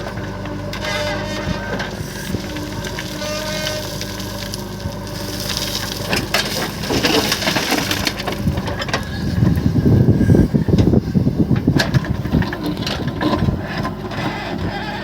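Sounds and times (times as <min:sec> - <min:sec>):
diesel engine running: 0:00.0 - 0:15.0
stones clattering in steel bucket: 0:01.8 - 0:09.0.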